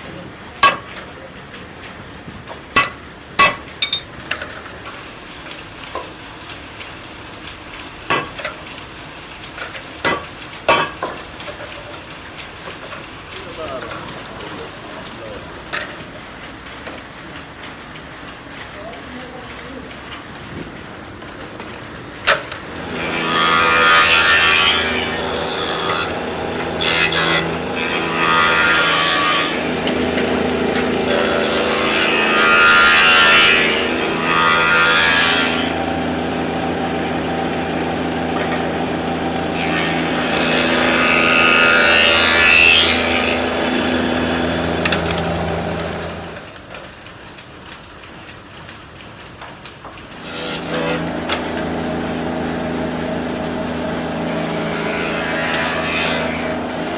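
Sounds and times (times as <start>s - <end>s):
woodworking machine humming: 20.3s - 46.6s, 50.0s - 56.9s
machine cutting into wood: 22.3s - 46.5s, 50.0s - 56.9s.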